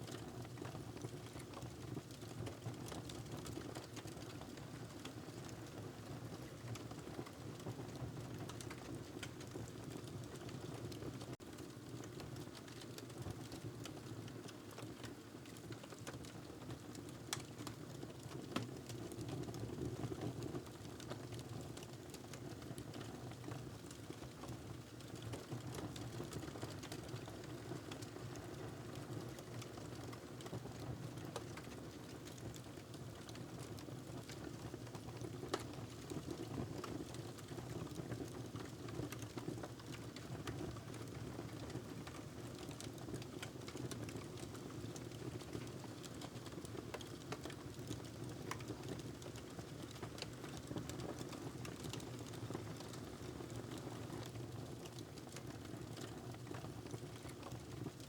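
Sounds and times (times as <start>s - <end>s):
wood fire crackling: 34.2s - 35.7s, 42.1s - 53.8s.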